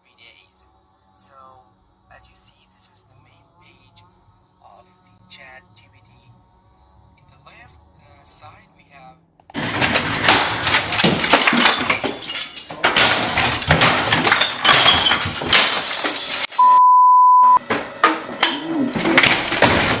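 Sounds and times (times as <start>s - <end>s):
glass breaking: 9.6s - 16.6s, 18.4s - 20.0s
things crashing and breaking: 9.6s - 16.6s, 17.6s - 20.0s
high censor beep: 16.6s - 17.6s.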